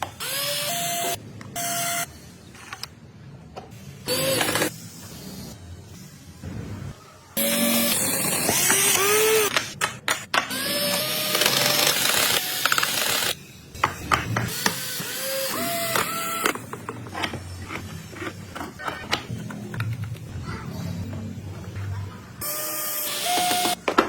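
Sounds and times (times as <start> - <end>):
power tool running: 22.4 - 23.8.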